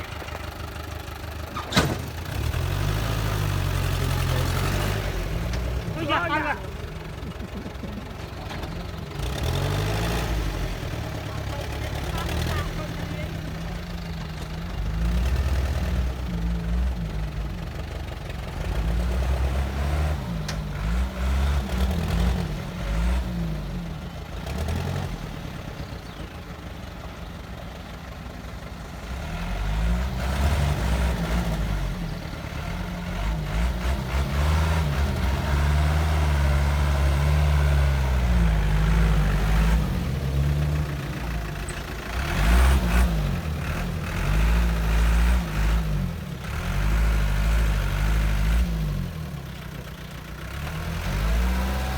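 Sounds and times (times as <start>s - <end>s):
construction machine diesel engine: 0.0s - 51.9s.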